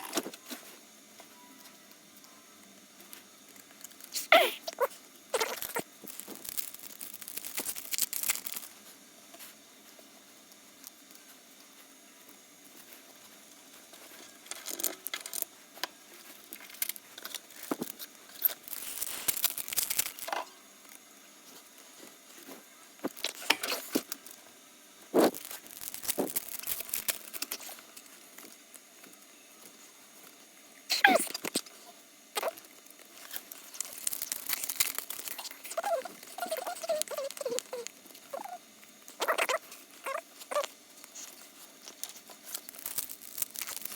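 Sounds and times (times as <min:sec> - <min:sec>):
card pack wrappers crinkling: 0:03.6 - 0:08.8, 0:16.3 - 0:20.3, 0:25.2 - 0:28.2, 0:32.4 - 0:43.9.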